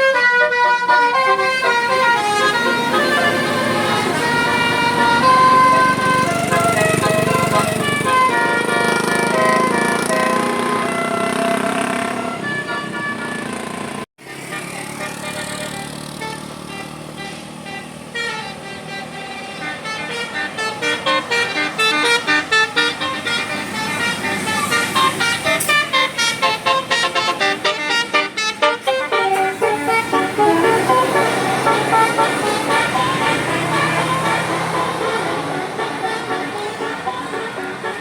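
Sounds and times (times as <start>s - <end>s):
musical bus horn tune: 0.0s - 38.0s.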